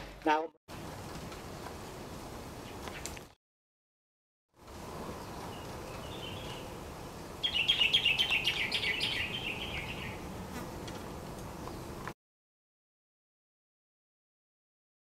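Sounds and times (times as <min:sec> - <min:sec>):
faint outdoor background: 0:00.0 - 0:03.4, 0:04.5 - 0:12.2.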